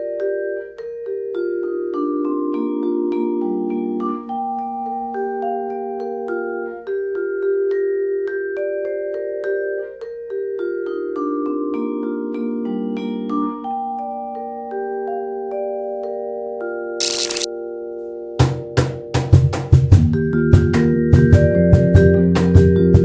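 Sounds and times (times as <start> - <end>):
short burst of noise: 17.0 - 17.5.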